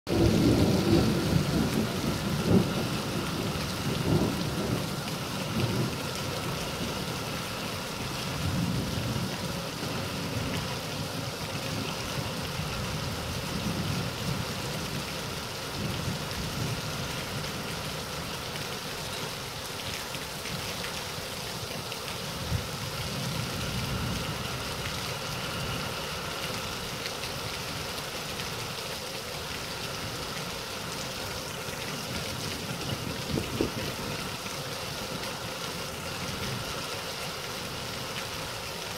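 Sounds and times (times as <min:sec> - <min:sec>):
thunder rumbling: 0:00.1 - 0:07.0
steady rain: 0:00.1 - 0:38.9.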